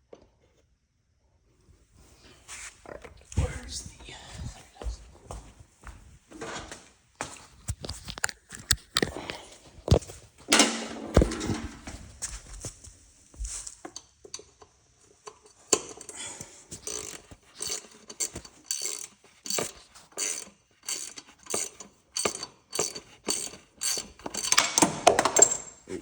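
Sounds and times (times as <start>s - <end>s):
socket wrench clicking: 16.8s - 25.7s.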